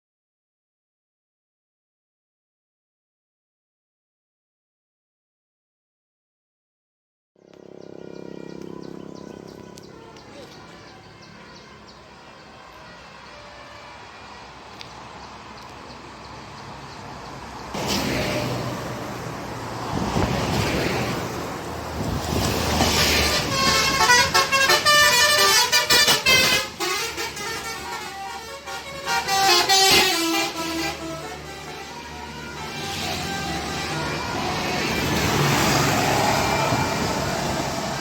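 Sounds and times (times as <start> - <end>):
multi-note bus horn tune: 7.4 - 14.6, 22.8 - 38.0
bus engine and tyre noise: 7.4 - 38.0.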